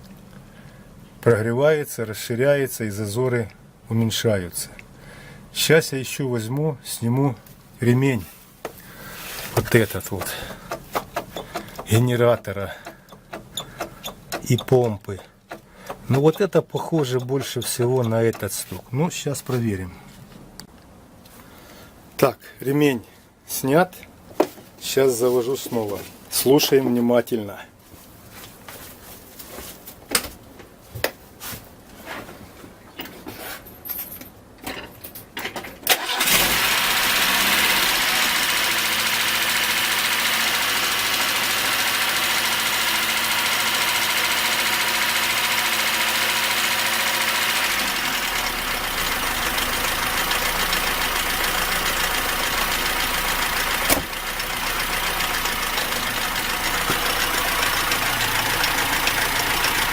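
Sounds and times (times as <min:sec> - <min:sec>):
car engine starting and idling: 0:08.7 - 0:18.8, 0:35.8 - 0:59.9
engine knocking and clanking: 0:10.1 - 0:18.6, 0:36.0 - 0:59.9.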